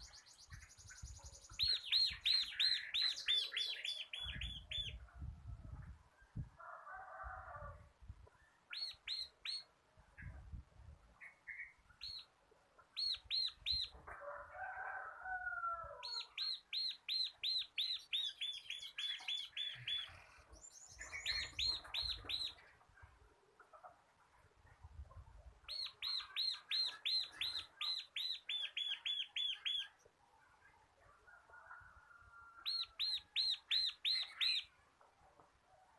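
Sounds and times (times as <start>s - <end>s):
bird singing rapid chirps: 16.1s - 22.6s.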